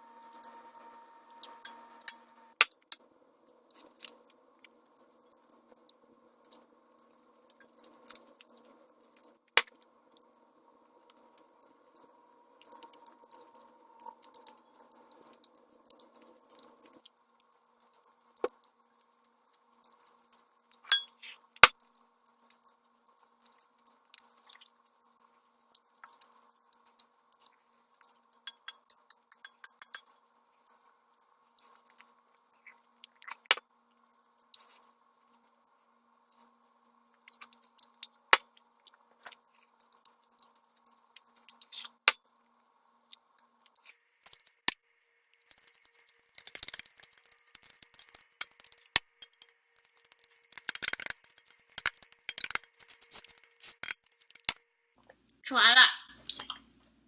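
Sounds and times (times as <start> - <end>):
tableware clinking: 0.2 - 2.4, 20.9 - 21.2
person chewing noodles: 3.5 - 28.4, 30.1 - 44.7.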